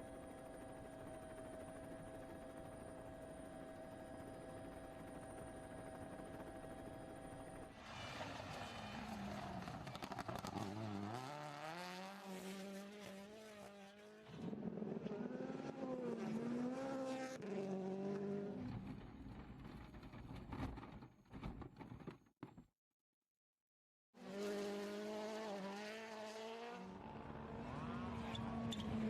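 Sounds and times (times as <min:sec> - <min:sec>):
rally car engine revving: 0:07.9 - 0:18.7, 0:24.2 - 0:29.0.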